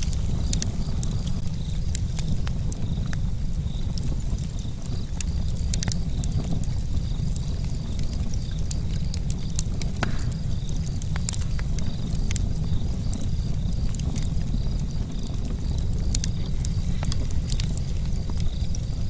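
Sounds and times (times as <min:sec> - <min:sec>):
campfire crackling and popping: 0:00.0 - 0:19.0
steady low rumble: 0:00.0 - 0:19.0.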